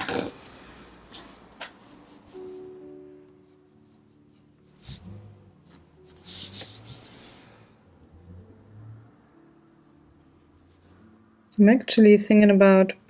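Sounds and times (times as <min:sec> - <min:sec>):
marker scratching on paper: 0:03.5 - 0:07.4.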